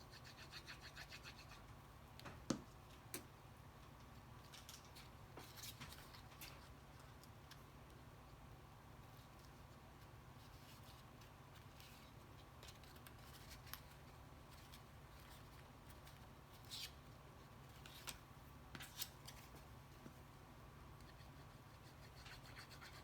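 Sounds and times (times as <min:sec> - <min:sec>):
room hum: 0:00.0 - 0:23.0.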